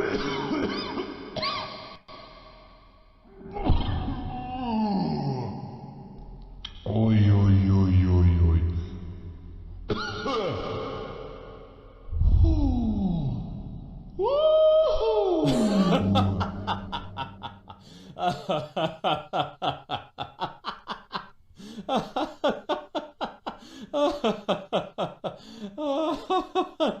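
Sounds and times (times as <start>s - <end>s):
person laughing: 15.4s - 27.0s.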